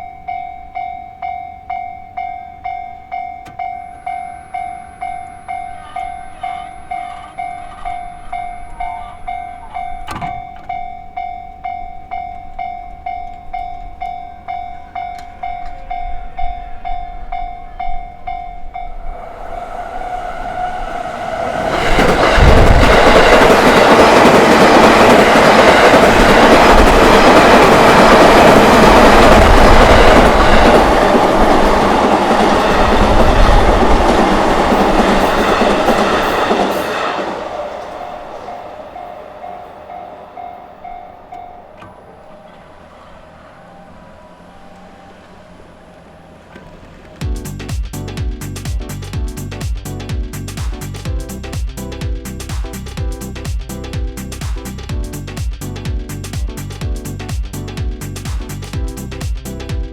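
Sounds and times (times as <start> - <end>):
level-crossing bell ringing: 0.0 - 21.1, 34.2 - 46.4
train passing: 0.0 - 59.9
wheels clattering on rails: 0.0 - 59.9.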